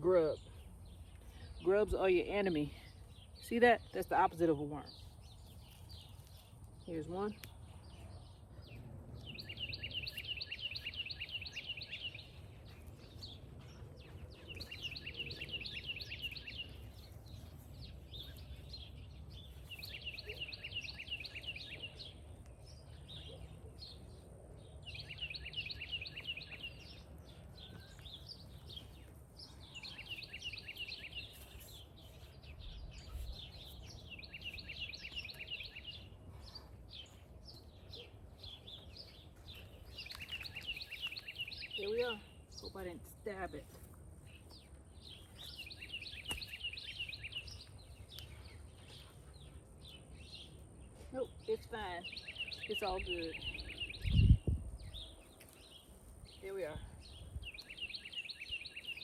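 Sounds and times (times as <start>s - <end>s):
songbird trilling: 9.3s - 12.5s, 45.0s - 48.3s, 51.4s - 59.0s.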